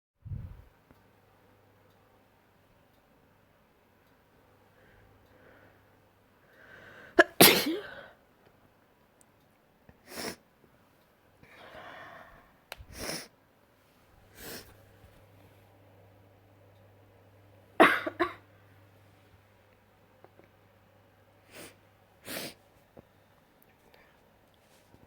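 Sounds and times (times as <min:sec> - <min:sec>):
person sneezing: 0:07.2 - 0:08.1
drawn-in breath: 0:11.5 - 0:13.3.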